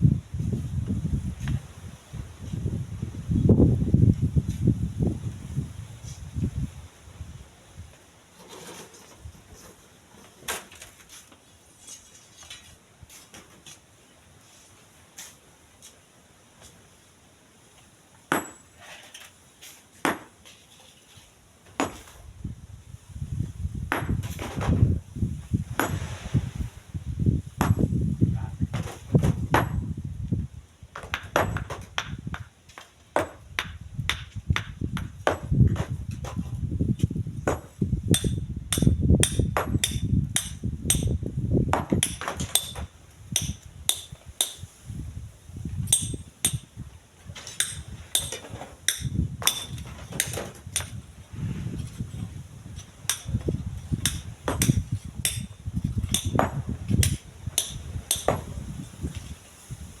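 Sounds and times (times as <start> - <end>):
wind buffeting microphone: 0.0 - 8.0, 22.2 - 32.5, 33.4 - 60.0.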